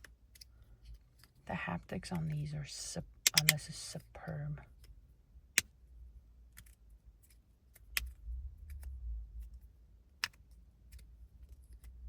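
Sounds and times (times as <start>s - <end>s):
low rumble of handling: 6.7s - 12.0s.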